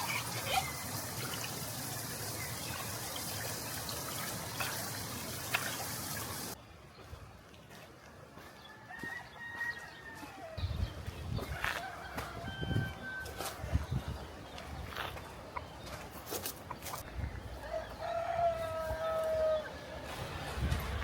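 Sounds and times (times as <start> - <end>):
stream water flowing: 0.0 - 6.6
rooster crowing: 8.7 - 10.6, 11.6 - 13.6, 17.6 - 19.8.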